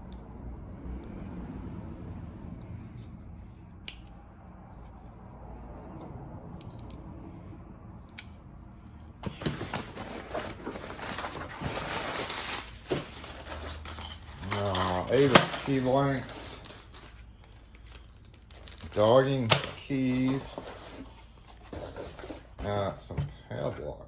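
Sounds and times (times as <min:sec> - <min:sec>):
packing material rustling: 0:09.2 - 0:21.2.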